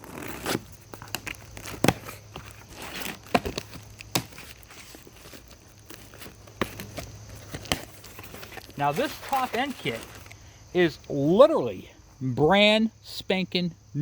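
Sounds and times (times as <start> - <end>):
packaging rustling and crinkling: 0.0 - 10.4.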